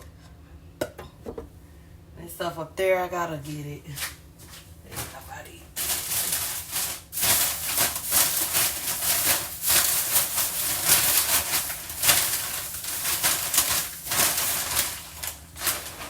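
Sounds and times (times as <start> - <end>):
packages rustling and crinkling: 4.0 - 16.0.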